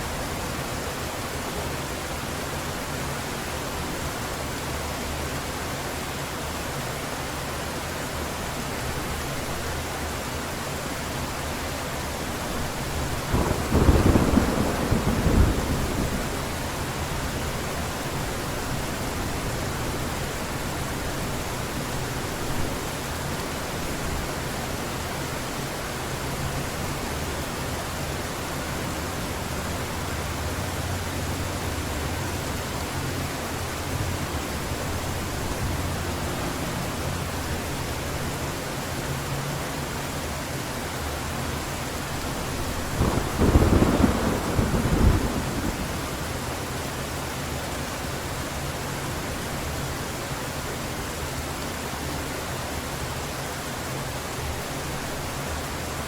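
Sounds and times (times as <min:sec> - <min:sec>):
heavy rain pouring: 0:00.0 - 0:56.0
thunder rumbling: 0:12.9 - 0:17.7, 0:42.5 - 0:46.4.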